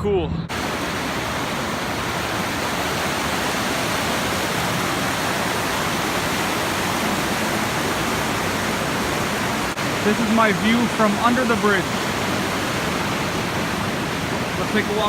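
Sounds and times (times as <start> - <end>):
waterfall rushing: 0.5 - 15.0.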